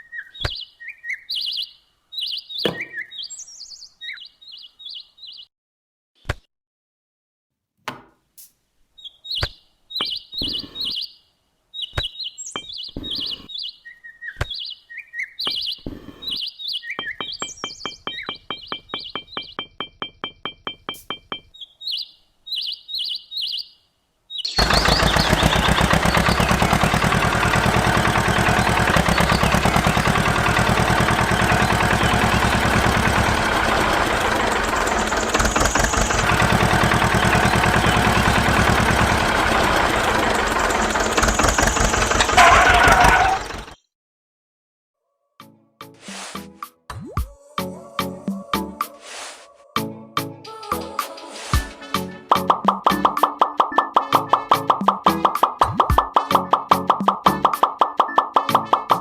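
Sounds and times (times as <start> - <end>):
bird-like chirps and clicks: 0.0 - 4.3, 9.0 - 11.1, 11.8 - 23.7, 24.3 - 26.6, 52.3 - 59.0
quick run of ticks: 24.6 - 38.2
engine running with even pulse: 24.6 - 43.8.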